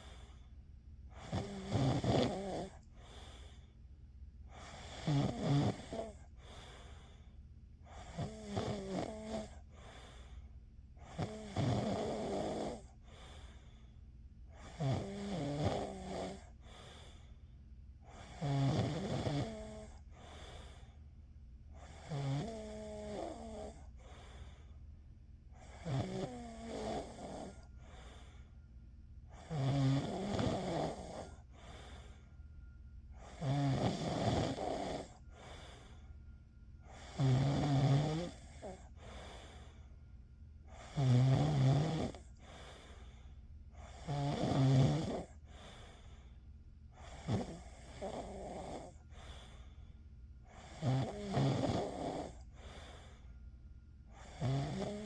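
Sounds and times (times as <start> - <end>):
faint breathing: 0.0 - 8.4, 9.0 - 44.3, 45.0 - 55.0
person snoring: 1.1 - 3.4, 4.5 - 6.6, 8.0 - 10.1, 11.0 - 13.0, 14.6 - 16.8, 18.1 - 20.6, 21.8 - 24.4, 25.6 - 28.2, 29.3 - 32.1, 33.2 - 36.0, 36.9 - 39.8, 40.7 - 43.0, 43.8 - 46.0, 47.0 - 49.6, 50.5 - 53.2, 54.2 - 55.0.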